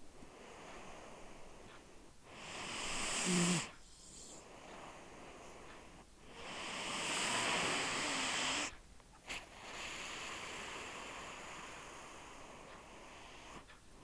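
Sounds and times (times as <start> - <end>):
cat snoring: 2.3 - 5.2, 6.2 - 8.7, 9.3 - 13.7.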